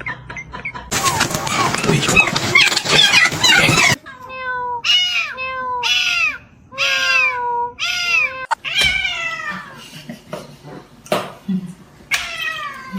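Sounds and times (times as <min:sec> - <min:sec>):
cat meowing: 0:01.5 - 0:09.6.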